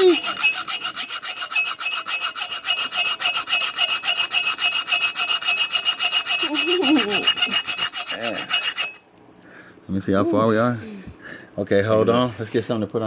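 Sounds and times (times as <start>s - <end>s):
saw blade cutting steel: 0.0s - 9.0s.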